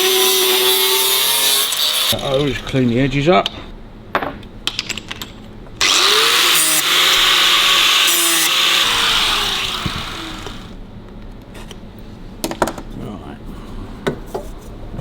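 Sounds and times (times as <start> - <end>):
angle grinder grinding steel: 0.0 - 2.5, 5.8 - 10.8.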